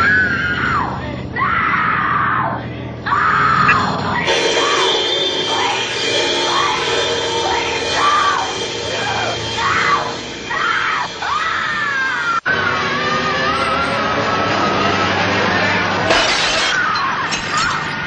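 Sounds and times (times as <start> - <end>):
loud music: 3.6 - 17.0
person screaming: 9.0 - 13.2.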